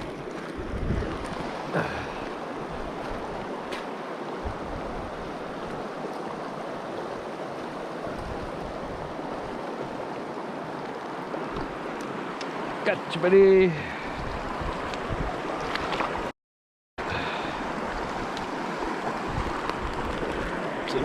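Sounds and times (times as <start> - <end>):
river flowing over rocks: 0.0 - 16.2, 17.0 - 21.0.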